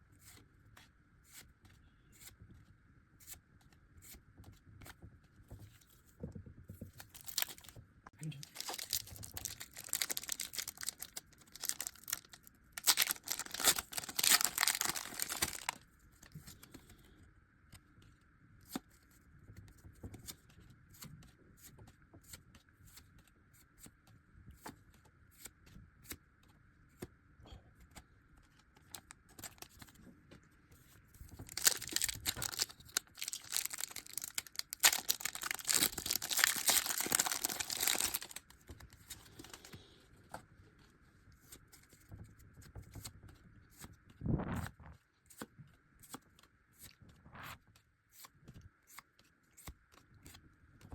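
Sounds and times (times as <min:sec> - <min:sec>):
foil packs tearing and crinkling: 0:07.2 - 0:07.7, 0:08.4 - 0:15.8, 0:31.4 - 0:38.4
rustling: 0:08.4 - 0:15.8, 0:31.3 - 0:38.4.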